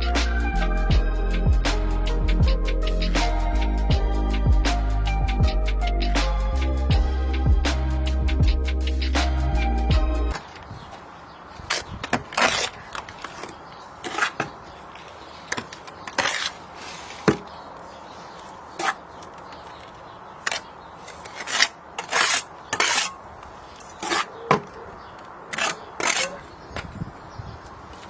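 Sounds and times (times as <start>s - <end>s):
trowel scraping and tapping brick: 11.7s - 14.6s, 20.4s - 23.2s, 25.5s - 26.5s.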